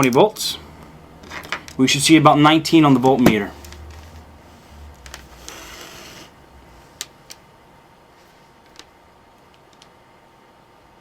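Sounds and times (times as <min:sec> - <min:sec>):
test probes rustling: 0:02.7 - 0:09.9
small sharp clicks: 0:09.5 - 0:10.0.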